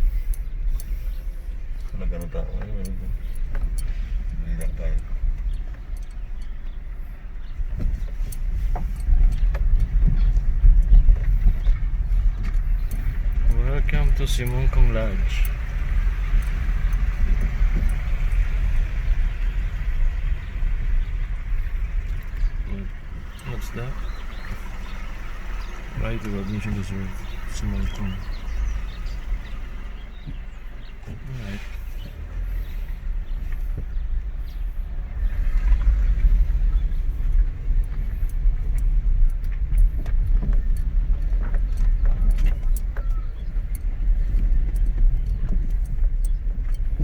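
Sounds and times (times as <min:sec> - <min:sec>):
road noise: 0:00.0 - 0:47.0
small clicks and rattles: 0:00.0 - 0:47.0
vehicle driving rumble: 0:00.0 - 0:47.0.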